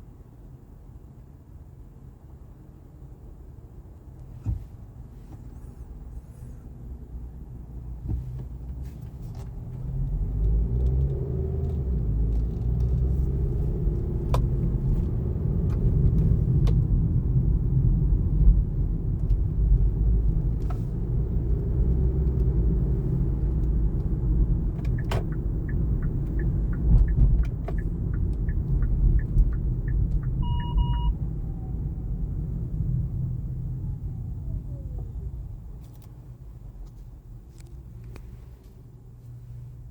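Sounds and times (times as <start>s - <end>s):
road and tyre rumble in car: 0.0s - 39.9s
two-tone electronic beep: 30.4s - 31.2s.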